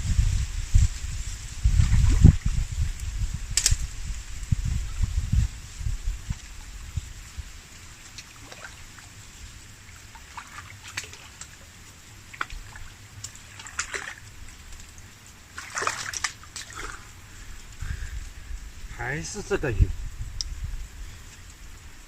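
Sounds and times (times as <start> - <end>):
water splashes and drips: 0.2 - 22.0
fish splashing: 7.8 - 17.7.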